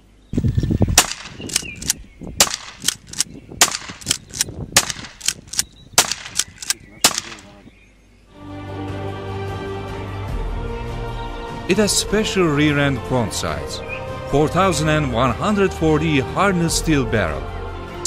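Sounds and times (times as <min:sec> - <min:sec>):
shotgun metallic clacks: 0:01.0 - 0:07.5.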